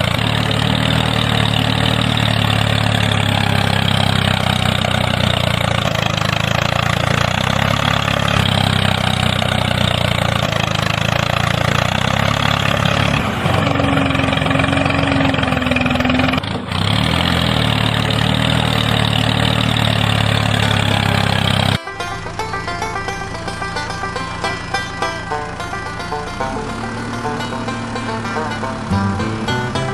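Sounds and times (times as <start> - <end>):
small engine running: 0.0 - 29.9
higher steady hum: 21.8 - 29.9.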